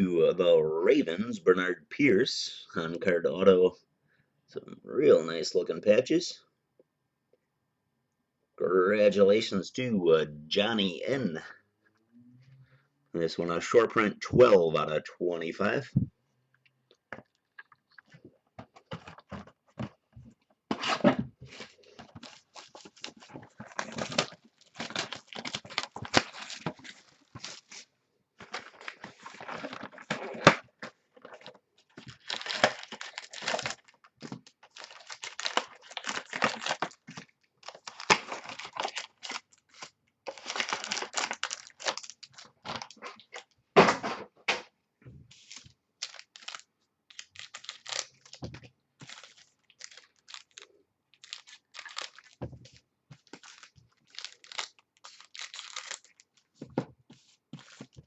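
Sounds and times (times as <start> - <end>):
wrappers tearing and crinkling: 20.8 - 30.6, 31.3 - 43.3, 45.4 - 48.4, 49.0 - 52.4, 53.2 - 56.5.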